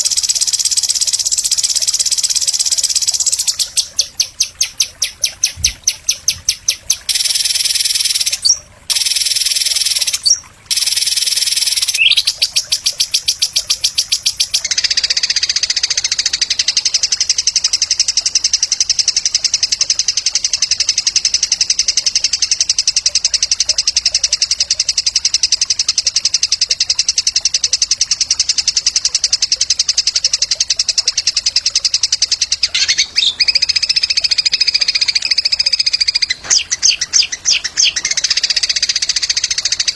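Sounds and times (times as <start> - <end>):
songbird buzzy trill: 0.0 - 39.9.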